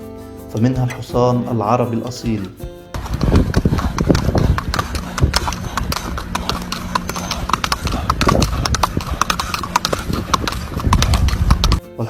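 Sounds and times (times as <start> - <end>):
horse hooves clip-clopping: 2.2 - 11.8.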